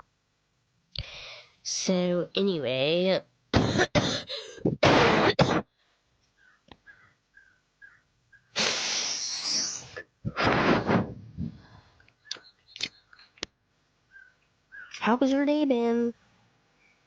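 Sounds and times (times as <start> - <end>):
girl breathing into microphone: 1.0 - 1.5
sharp clicks: 12.0 - 13.6.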